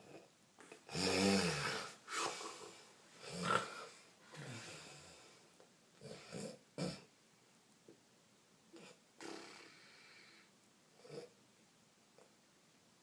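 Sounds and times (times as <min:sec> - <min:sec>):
man snoring: 0:00.9 - 0:02.5, 0:03.2 - 0:05.2, 0:08.8 - 0:10.3.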